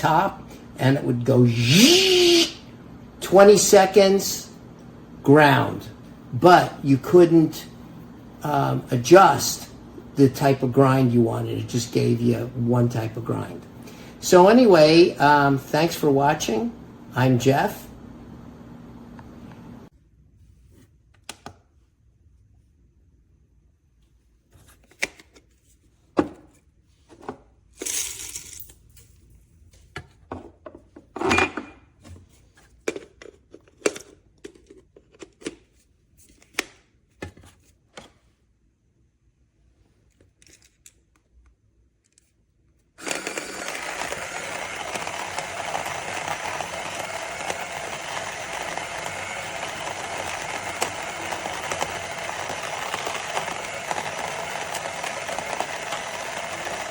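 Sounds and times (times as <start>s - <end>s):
coffee grinder grinding beans: 0.0s - 4.5s, 8.4s - 17.8s, 43.0s - 56.9s.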